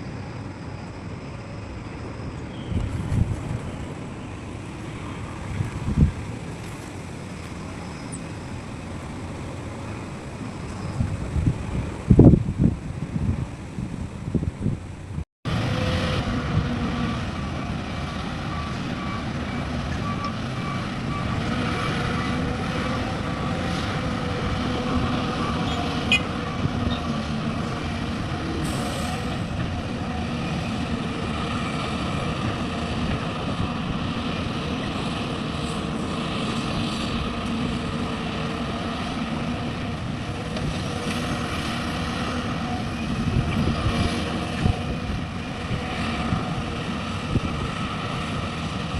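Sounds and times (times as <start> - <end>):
diesel machinery running: 0.0 - 48.9.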